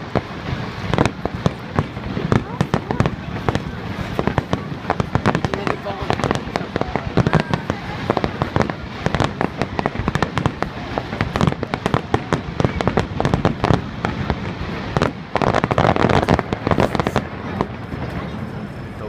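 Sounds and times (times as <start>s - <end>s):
fireworks bangs: 0.0s - 19.0s
fireworks crackling: 0.0s - 19.0s.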